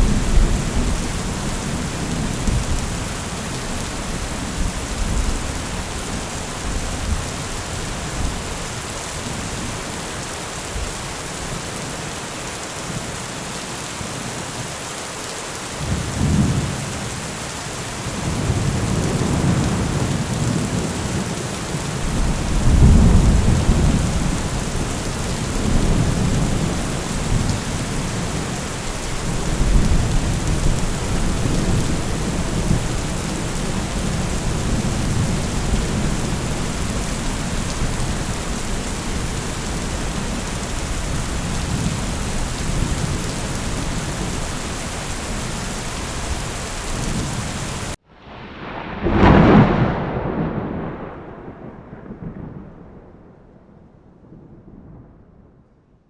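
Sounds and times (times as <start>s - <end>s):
heavy rain on a metal roof: 0.0s - 53.1s
thunder rolling: 18.2s - 55.6s.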